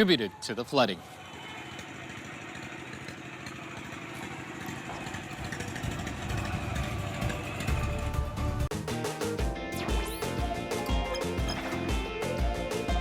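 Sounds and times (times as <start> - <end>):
motor running with low rumble: 1.8 - 8.7.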